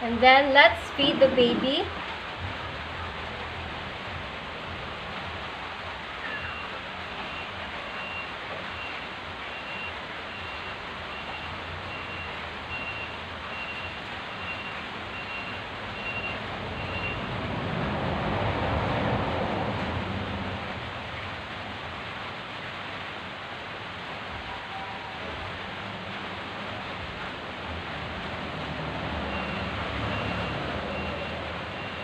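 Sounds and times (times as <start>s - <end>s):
background hiss: 0.0s - 32.0s
reversing alarm beeping: 6.2s - 17.3s, 29.2s - 32.0s.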